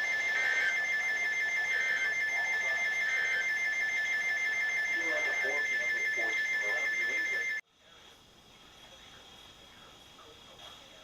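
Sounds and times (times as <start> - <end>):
pulsing two-tone alarm: 0.0 - 7.6.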